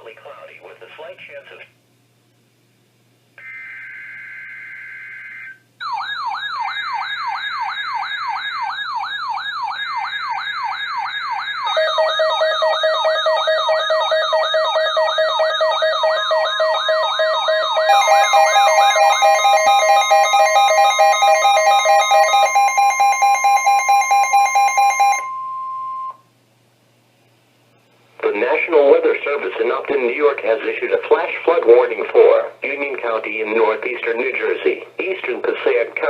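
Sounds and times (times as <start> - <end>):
steady alarm tones: 3.4 - 26.2
wailing electronic sirens: 3.4 - 26.2.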